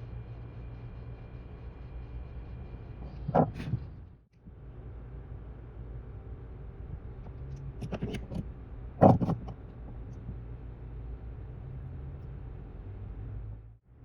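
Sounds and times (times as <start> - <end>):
low hum: 0.0 - 14.0
sharp clicks and knocks: 9.0 - 10.4.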